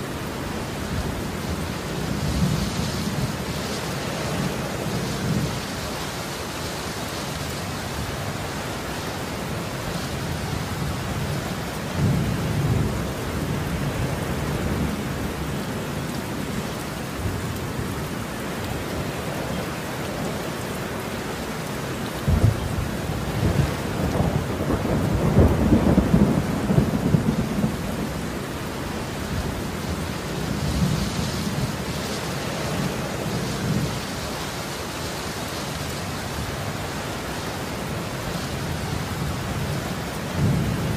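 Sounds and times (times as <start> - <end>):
heavy rain pouring: 0.0 - 40.9
thunder rumbling: 22.2 - 32.0, 38.6 - 40.9.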